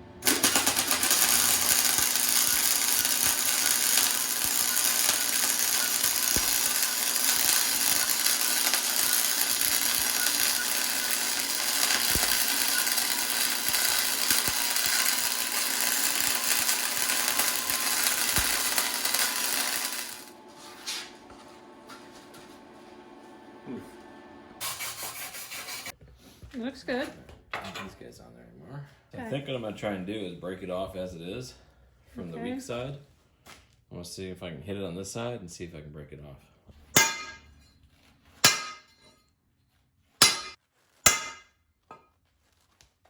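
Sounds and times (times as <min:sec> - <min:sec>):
welding arc crackling: 0:00.2 - 0:20.4.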